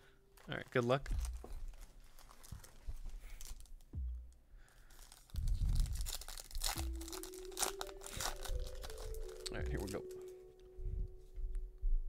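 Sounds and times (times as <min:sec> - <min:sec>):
foil pack tearing and crinkling: 0:00.4 - 0:03.8, 0:04.8 - 0:10.3.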